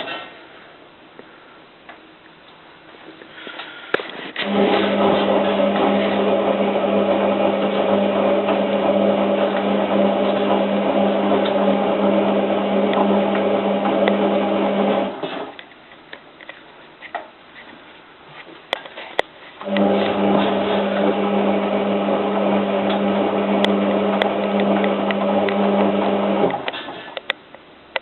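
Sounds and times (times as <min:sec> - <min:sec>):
washing machine drum motor hum: 0:04.4 - 0:15.6, 0:19.6 - 0:27.2.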